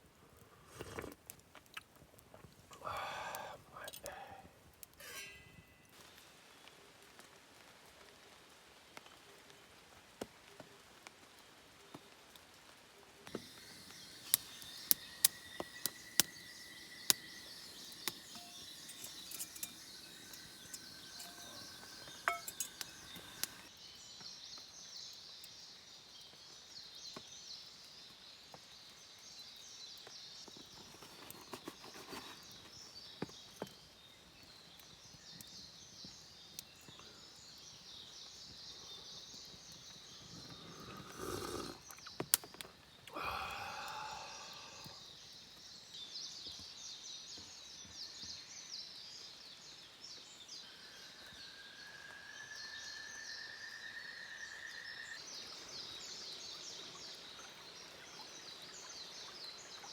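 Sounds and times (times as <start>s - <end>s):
small birds chirping: 0.9s - 6.2s, 13.3s - 59.9s
whistled bird notes: 2.8s - 4.4s, 13.3s - 23.7s, 43.2s - 45.3s, 50.1s - 57.3s.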